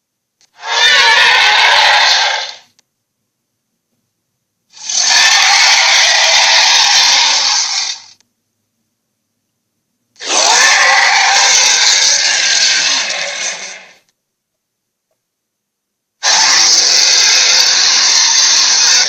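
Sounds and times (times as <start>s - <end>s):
monster roar: 0.6s - 2.6s, 4.8s - 8.1s, 10.2s - 14.0s, 16.2s - 19.0s.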